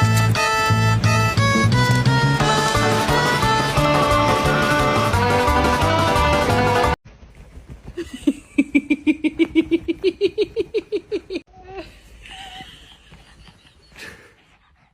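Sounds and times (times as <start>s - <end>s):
person laughing rapidly: 8.0s - 11.5s, 12.1s - 14.4s.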